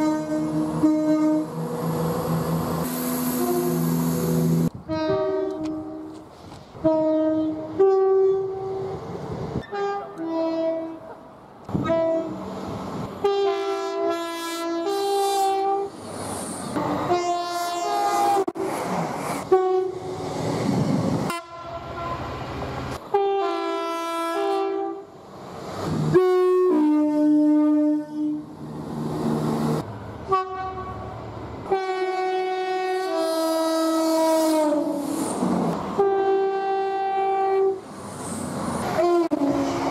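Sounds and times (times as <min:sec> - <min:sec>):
two-tone train horns: 0:00.0 - 0:01.9, 0:02.8 - 0:06.2, 0:06.8 - 0:09.0, 0:09.6 - 0:12.5, 0:13.2 - 0:16.0, 0:16.8 - 0:18.6, 0:19.4 - 0:20.2, 0:21.3 - 0:25.1, 0:26.1 - 0:28.5, 0:30.2 - 0:35.0, 0:35.9 - 0:37.8, 0:38.9 - 0:39.9
trains passing with wheel clatter: 0:00.0 - 0:39.9.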